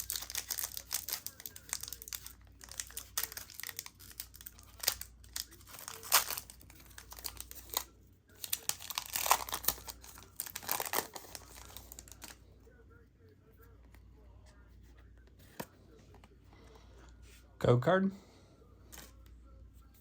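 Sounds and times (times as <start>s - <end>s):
foil wrapper crinkling and tearing: 0.0s - 12.4s.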